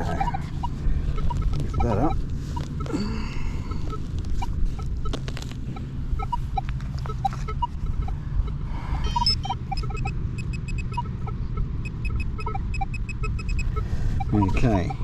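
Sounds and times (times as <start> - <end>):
faint high chirps: 9.0 - 11.0.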